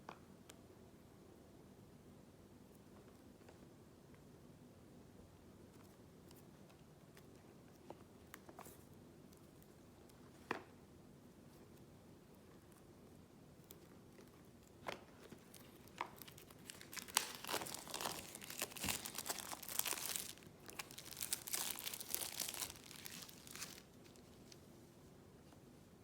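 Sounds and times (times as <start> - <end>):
plastic wrap tearing and crinkling: 15.2 - 24.6.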